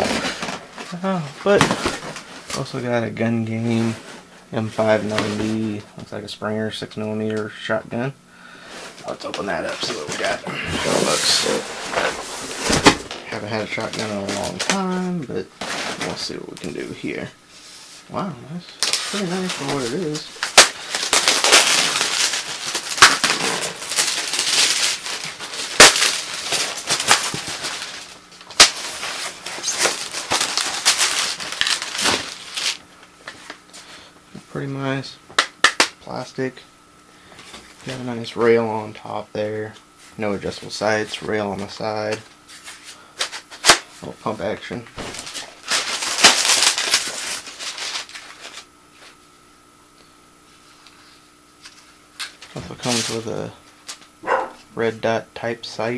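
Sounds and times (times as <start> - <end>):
faint steady hum: 0.0 - 55.9
plastic packaging crinkling: 9.0 - 17.0, 18.7 - 33.6, 45.0 - 49.2.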